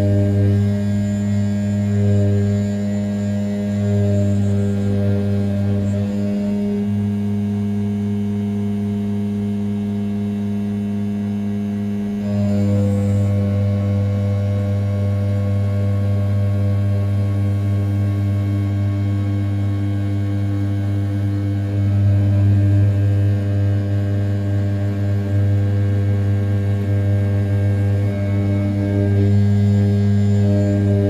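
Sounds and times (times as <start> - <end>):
mill spindle cutting aluminium: 0.0 - 8.0, 26.2 - 31.0.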